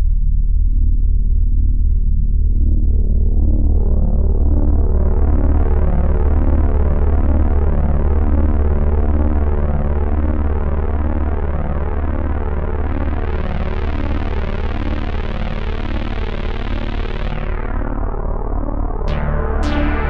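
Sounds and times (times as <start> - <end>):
deep bass note: 12.1 - 20.0
synthesizer sustained chord: 13.2 - 20.0.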